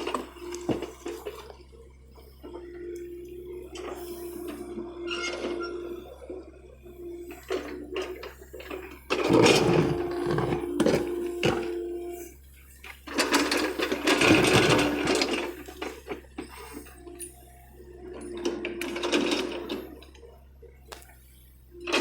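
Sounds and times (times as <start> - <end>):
excavator machine hum: 0.0 - 22.0
whirring grinding noise: 0.0 - 22.0.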